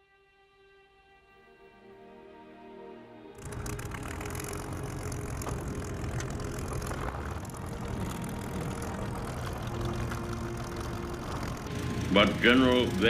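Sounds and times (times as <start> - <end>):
aircraft engine drone: 3.4 - 13.0.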